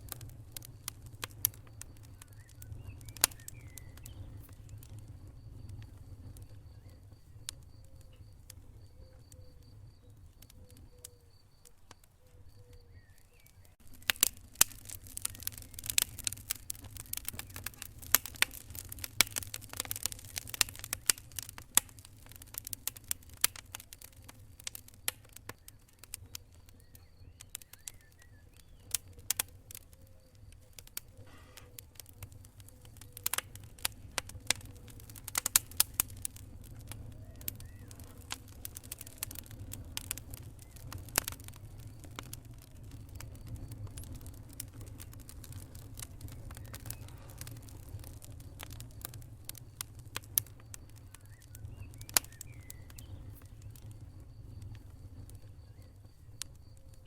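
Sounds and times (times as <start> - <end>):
low rumble of flames: 0.0 - 57.0
wood fire crackling and popping: 0.0 - 57.0.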